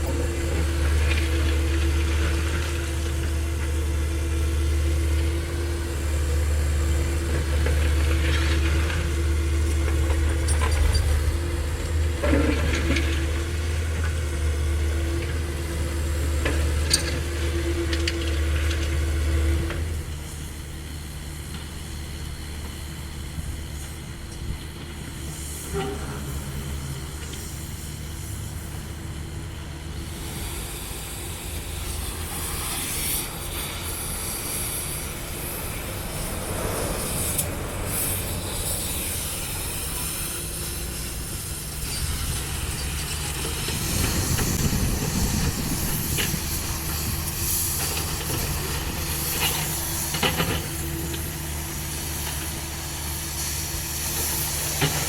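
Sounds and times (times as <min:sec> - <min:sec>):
diesel engine running: 0:00.0 - 0:55.0
hydraulics hissing: 0:25.3 - 0:55.0.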